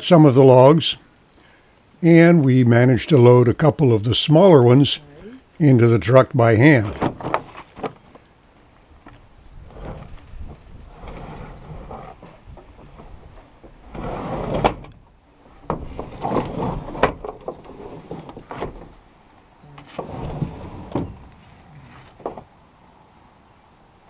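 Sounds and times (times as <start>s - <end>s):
logs scraping and knocking: 6.5s - 8.3s, 9.0s - 19.0s, 19.8s - 22.5s
wood thumping on truck bed: 7.0s - 8.2s, 15.6s - 19.0s.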